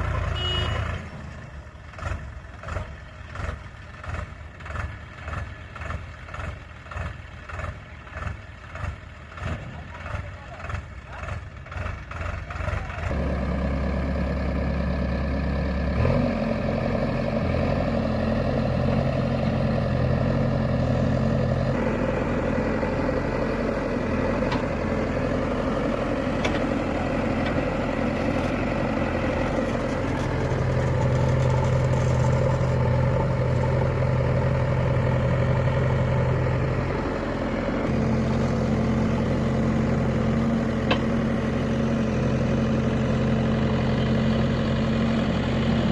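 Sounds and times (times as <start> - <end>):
vehicle engine idling: 0.0 - 45.9.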